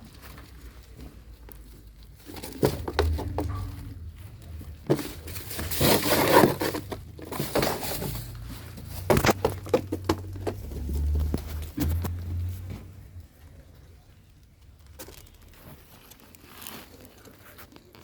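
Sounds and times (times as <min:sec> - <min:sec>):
goats crunching corn: 0:00.0 - 0:18.0
low rumble: 0:02.7 - 0:05.7.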